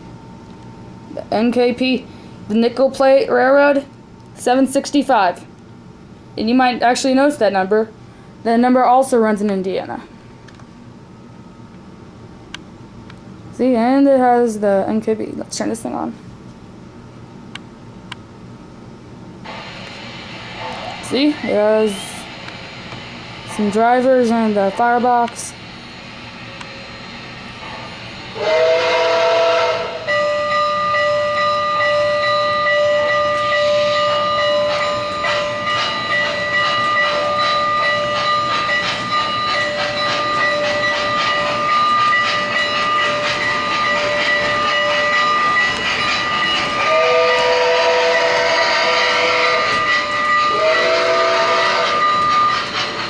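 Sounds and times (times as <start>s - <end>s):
steam hiss: 19.5s - 30.1s
steam whistle blasts: 27.6s - 30.6s, 46.8s - 52.7s.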